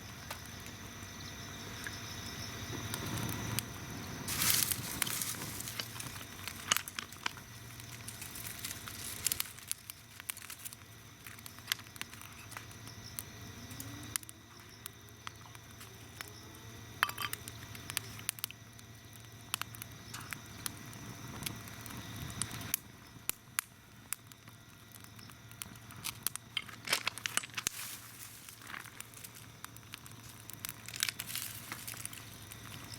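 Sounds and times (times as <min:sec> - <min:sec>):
wood fire crackling and popping: 0:00.0 - 0:32.9.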